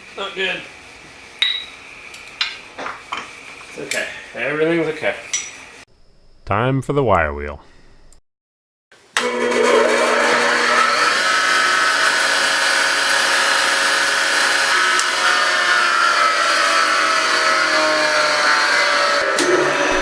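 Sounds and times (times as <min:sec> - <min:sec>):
wire wheel grinder whining: 0:09.2 - 0:20.0.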